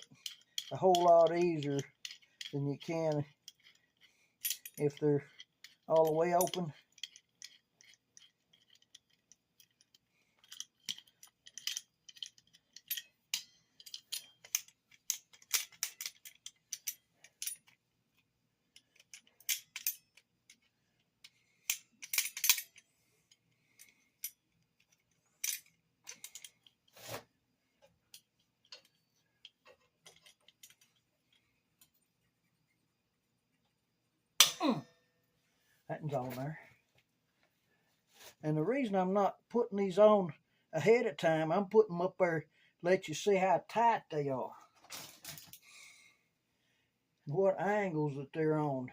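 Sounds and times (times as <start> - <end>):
locking pliers clicking and clinking: 0.0 - 26.8, 28.1 - 31.0.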